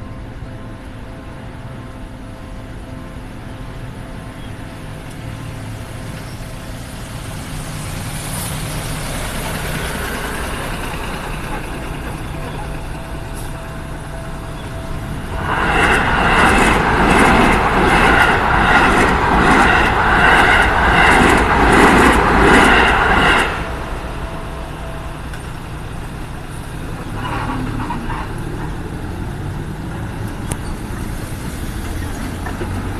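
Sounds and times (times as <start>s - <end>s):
traffic hum: 0.0s - 32.9s
low rumble: 10.2s - 28.0s.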